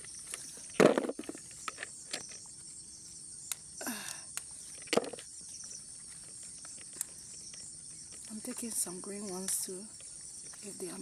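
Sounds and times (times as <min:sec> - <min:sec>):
crickets chirring: 0:00.0 - 0:11.0.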